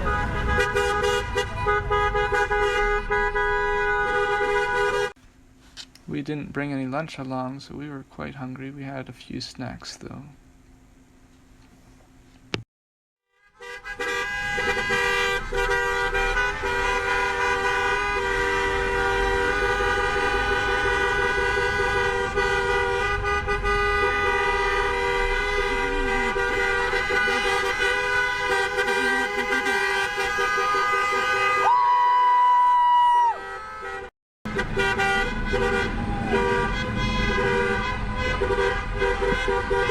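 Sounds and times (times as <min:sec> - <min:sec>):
high-pitched car horn: 0:00.0 - 0:05.2, 0:13.2 - 0:32.2, 0:33.1 - 0:39.9
many vehicle horns honking: 0:00.0 - 0:05.2, 0:13.3 - 0:32.0, 0:33.2 - 0:39.9.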